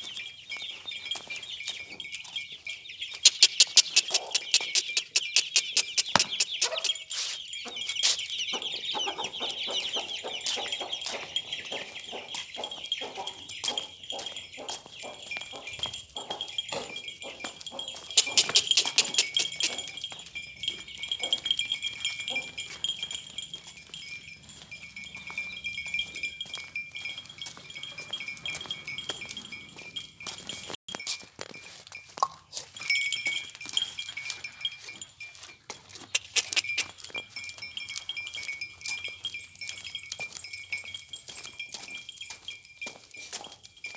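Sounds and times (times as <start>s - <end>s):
metallic jingling and ringing: 0.0s - 43.9s.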